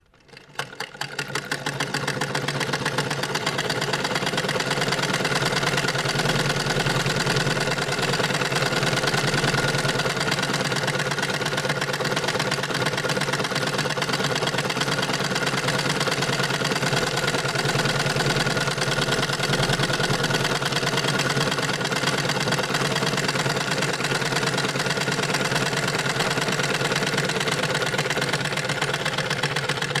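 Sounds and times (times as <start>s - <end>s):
sewing machine running: 0.0s - 30.0s.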